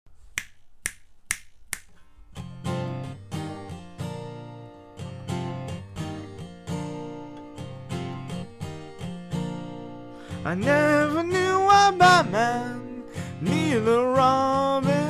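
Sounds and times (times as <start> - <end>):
sharp count-in clicks: 0.4 - 2.0
guitar strumming chords: 2.2 - 15.0.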